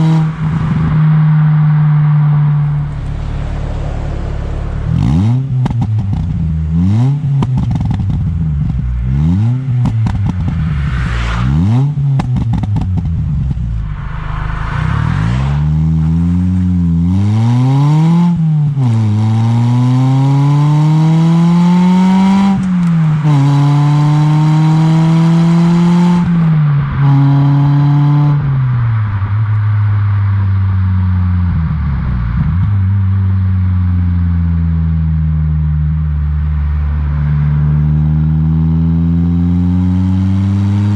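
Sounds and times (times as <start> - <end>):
car engine revving: 0.0 - 40.9
exhaust crackles and pops: 1.7 - 9.1, 9.7 - 17.2, 22.5 - 23.5.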